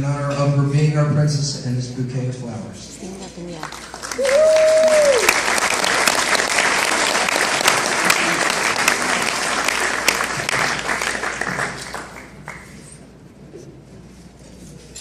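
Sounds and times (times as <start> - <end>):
crowd applauding: 3.6 - 13.0.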